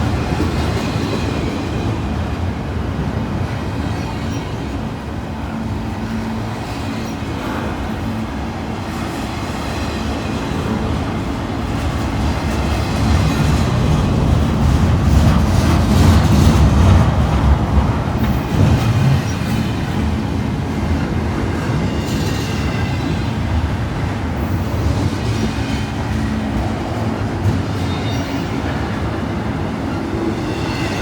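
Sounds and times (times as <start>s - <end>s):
freight train wheels rumbling: 0.0s - 31.0s
train wheels clattering: 6.2s - 31.0s.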